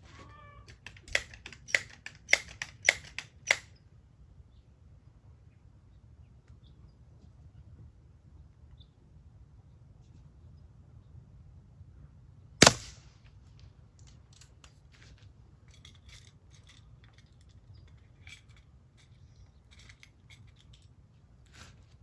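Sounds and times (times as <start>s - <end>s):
air pistol pop: 12.6s - 13.0s.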